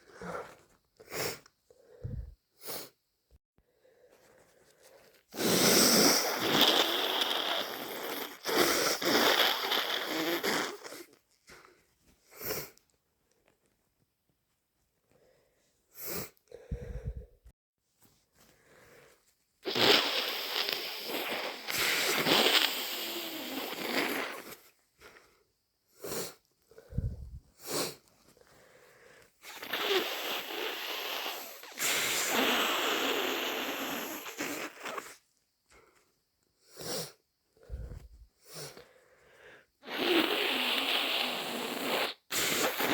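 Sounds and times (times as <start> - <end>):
person blowing nose: 0.0 - 1.5, 2.1 - 3.0, 5.3 - 12.8, 19.6 - 25.2, 26.0 - 28.1, 29.4 - 35.2, 36.7 - 38.9, 39.8 - 42.9
person sniffing: 0.0 - 3.0, 4.1 - 12.8, 15.9 - 17.4, 18.5 - 25.4, 26.0 - 36.0, 36.6 - 42.9.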